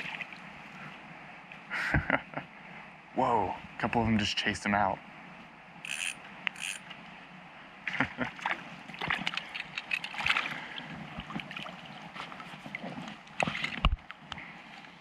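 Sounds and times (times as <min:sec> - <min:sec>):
muffled river water splashing: 0:00.0 - 0:01.7, 0:05.7 - 0:15.0.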